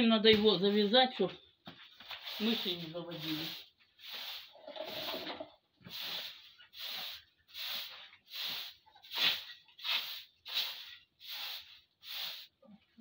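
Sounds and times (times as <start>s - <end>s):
broom sweeping: 0.4s - 1.0s, 1.7s - 12.7s.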